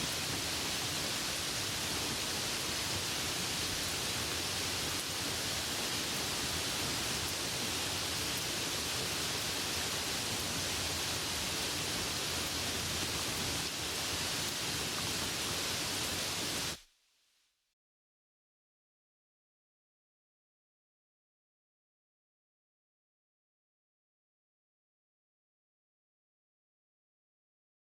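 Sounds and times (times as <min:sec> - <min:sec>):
steady rain falling: 0:00.0 - 0:16.9.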